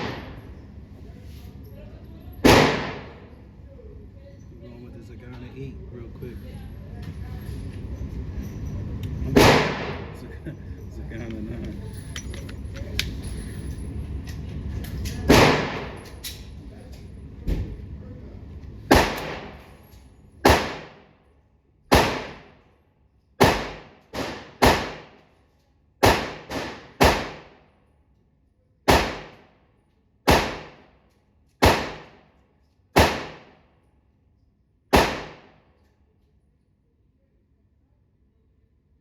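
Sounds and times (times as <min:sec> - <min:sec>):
pistol shots: 0:00.0 - 0:00.4, 0:02.4 - 0:03.3, 0:09.4 - 0:10.2, 0:15.3 - 0:16.0, 0:18.9 - 0:19.7, 0:20.4 - 0:21.1, 0:21.9 - 0:22.6, 0:23.4 - 0:25.2, 0:26.0 - 0:27.6, 0:28.9 - 0:29.4, 0:30.3 - 0:30.9, 0:31.6 - 0:32.2, 0:33.0 - 0:33.6, 0:34.9 - 0:35.6.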